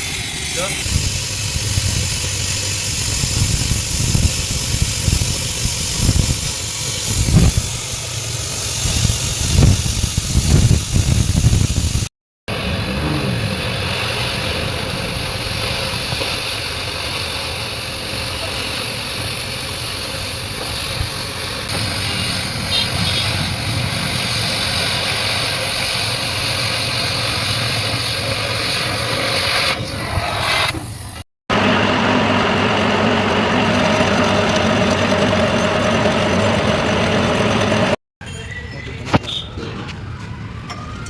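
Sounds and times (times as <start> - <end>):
engine running with low rumbles: 0.0 - 29.2, 31.5 - 38.0
welding arc hissing and crackling: 0.0 - 32.0.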